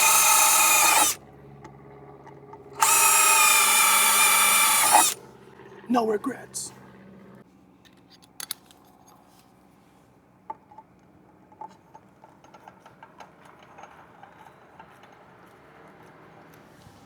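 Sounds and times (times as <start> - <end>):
screws clicking and tapping: 0.0 - 1.2, 2.8 - 5.2.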